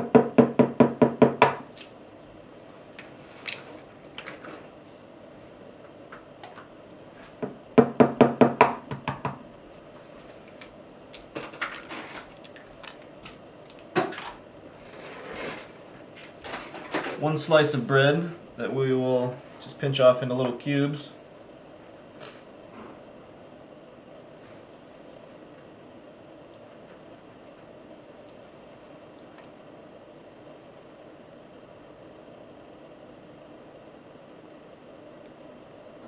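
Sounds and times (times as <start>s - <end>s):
rapid knocking on mixing bowl: 0.0s - 1.6s, 7.4s - 9.4s.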